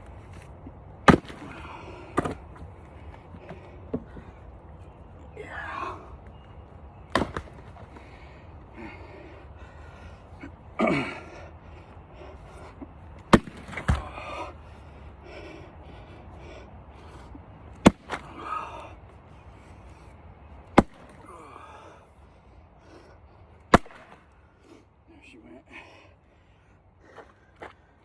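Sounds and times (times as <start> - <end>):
axe striking wood: 1.1 - 1.6, 2.2 - 2.4, 7.1 - 7.6, 13.3 - 14.0, 17.8 - 18.2, 20.8 - 21.2, 23.7 - 24.2
heavy breathing: 1.3 - 6.4, 7.7 - 13.2, 13.8 - 17.6, 18.2 - 20.3, 21.1 - 28.0.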